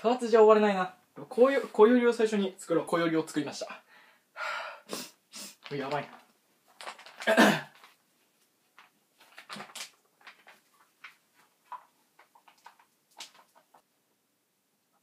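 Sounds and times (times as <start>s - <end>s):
faint breaths: 3.8s - 5.7s
man sneezing: 7.2s - 7.7s.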